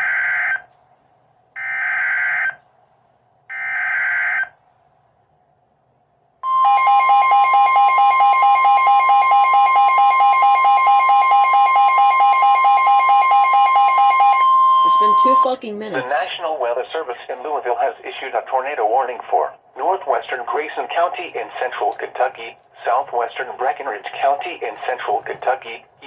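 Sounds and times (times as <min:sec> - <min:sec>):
two-tone attention signal: 0:06.4 - 0:16.3.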